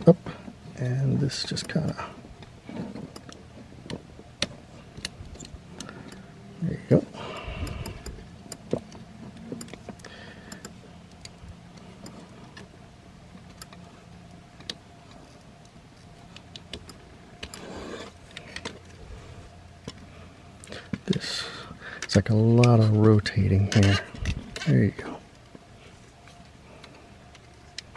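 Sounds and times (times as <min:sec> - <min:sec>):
faint steady hum: 0:00.0 - 0:27.9
rustling scrape: 0:17.6 - 0:18.3.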